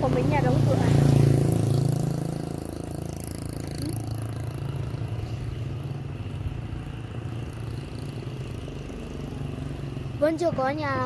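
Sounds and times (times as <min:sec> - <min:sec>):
motorbike engines humming: 0:00.0 - 0:11.0.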